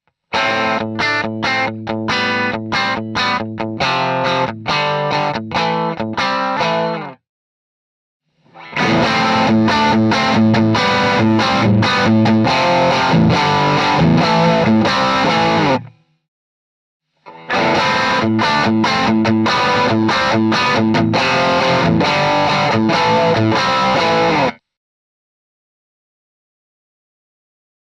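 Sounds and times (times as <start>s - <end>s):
overdriven electric guitar phrases: 0.3s - 7.2s, 8.5s - 16.0s, 17.3s - 24.6s.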